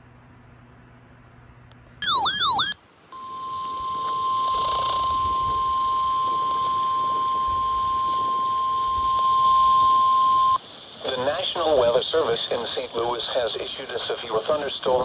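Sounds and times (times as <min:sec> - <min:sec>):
steady single-pitched alarm tone: 0:02.0 - 0:10.6
receiver hiss: 0:02.0 - 0:15.0.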